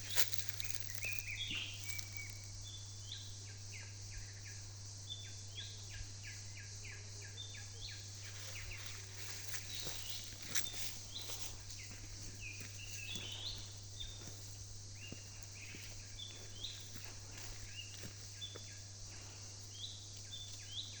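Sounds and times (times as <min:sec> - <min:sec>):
steady high hiss: 0:00.0 - 0:06.4
birds chirping: 0:00.0 - 0:21.0.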